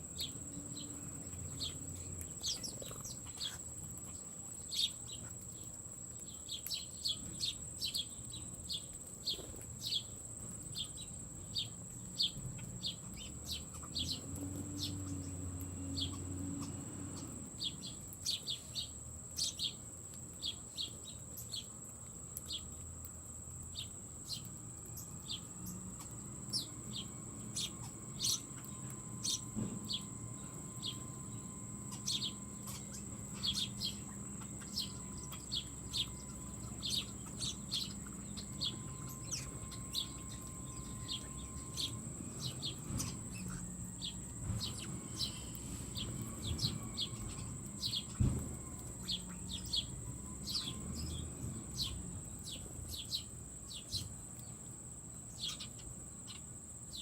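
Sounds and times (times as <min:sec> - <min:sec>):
songbirds chirping: 0:00.0 - 0:57.0
steady high-pitched whine: 0:16.7 - 0:57.0.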